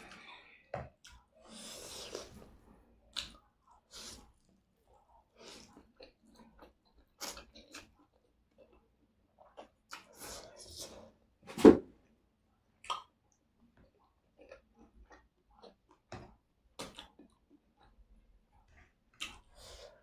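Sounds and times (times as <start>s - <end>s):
person chewing noodles: 1.0s - 11.0s, 13.8s - 16.1s, 19.1s - 20.0s.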